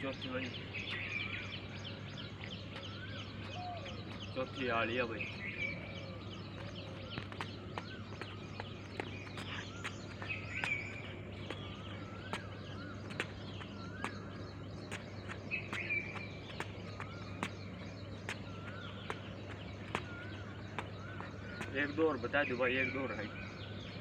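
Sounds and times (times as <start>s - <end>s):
bird warbling call: 2.8s - 23.7s
bird wavering call: 2.9s - 4.7s.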